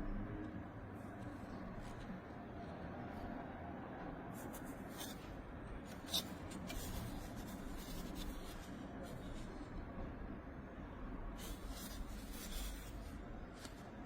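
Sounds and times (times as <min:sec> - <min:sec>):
low background hum: 0:00.0 - 0:14.0
rubbing and handling noises: 0:04.3 - 0:10.1, 0:11.3 - 0:14.0.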